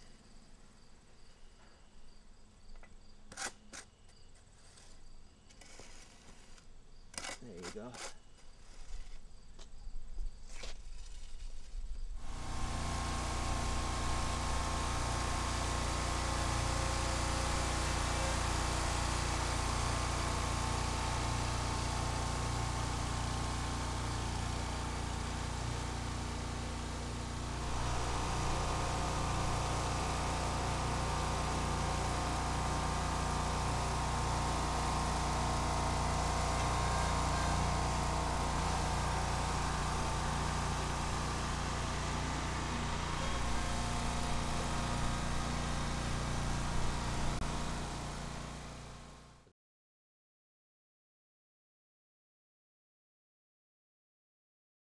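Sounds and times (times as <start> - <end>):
engine running steadily: 12.2 - 49.5.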